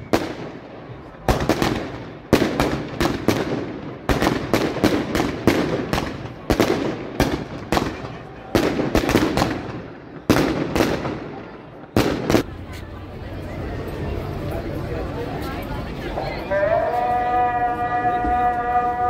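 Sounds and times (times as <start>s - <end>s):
fireworks bangs: 0.0s - 12.5s.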